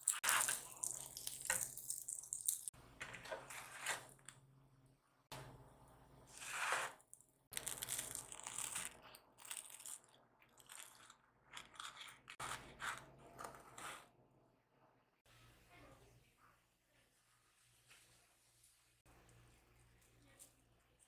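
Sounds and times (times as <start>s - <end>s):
utensils scraping and crunching: 6.3s - 14.0s.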